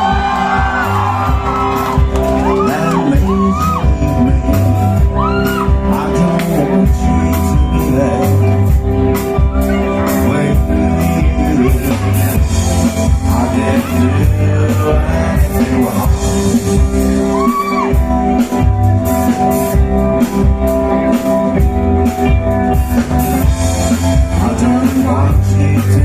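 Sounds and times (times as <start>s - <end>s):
person singing: 2.2s - 18.6s, 23.9s - 26.0s.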